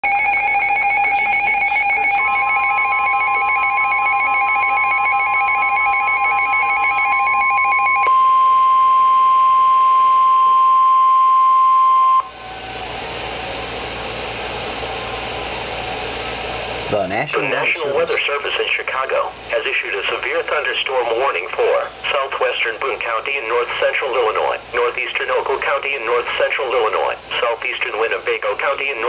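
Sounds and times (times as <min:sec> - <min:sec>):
warbling electronic alarm: 0:00.0 - 0:12.9
steady warning tone: 0:00.0 - 0:29.0
radio hiss: 0:17.1 - 0:29.0.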